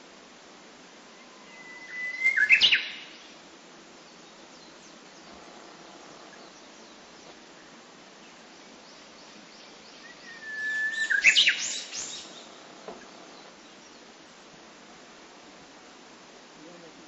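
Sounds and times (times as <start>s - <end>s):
steady outdoor hiss: 0.0s - 17.0s
bush warbler singing: 4.0s - 14.2s.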